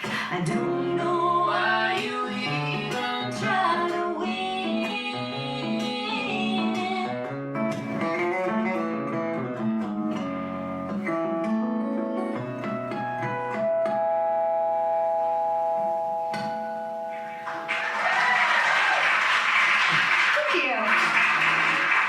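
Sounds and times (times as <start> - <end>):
person singing: 0.0 - 7.2
acoustic guitar music: 0.0 - 17.9.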